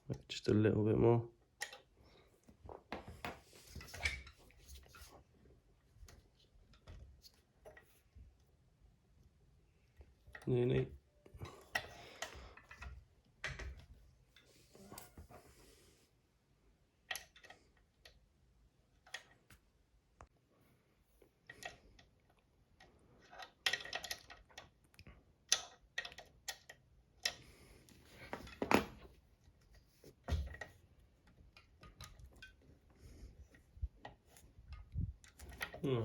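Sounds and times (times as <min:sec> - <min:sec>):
small clicks and knocks: 0:21.4 - 0:29.0.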